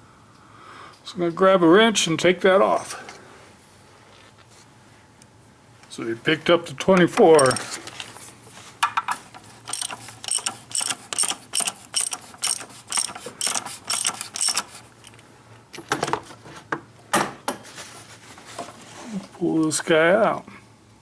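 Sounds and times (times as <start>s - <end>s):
ratchet wrench clicking: 7.3s - 7.7s, 9.7s - 15.2s.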